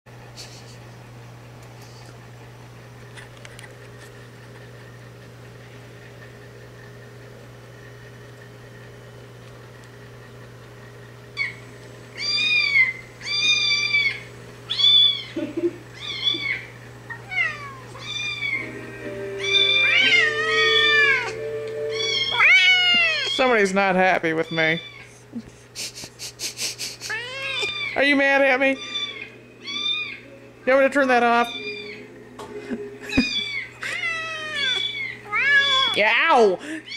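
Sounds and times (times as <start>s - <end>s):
faint steady hum: 0.2s - 36.9s
cat calling: 11.4s - 18.6s, 19.4s - 23.5s, 26.9s - 28.0s, 28.7s - 30.2s, 31.4s - 32.1s, 33.1s - 36.0s
kitten mewing: 16.0s - 18.6s, 22.0s - 23.4s, 25.9s - 28.0s, 33.1s - 36.1s.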